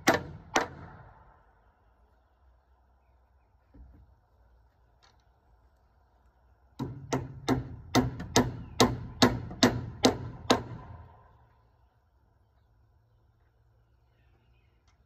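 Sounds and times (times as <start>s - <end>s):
hammer striking nails into metal: 0.0s - 0.9s, 6.8s - 11.0s.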